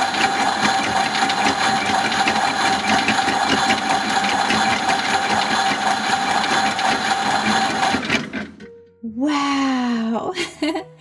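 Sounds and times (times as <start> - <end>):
toy washing machine whirring: 0.0 - 8.6.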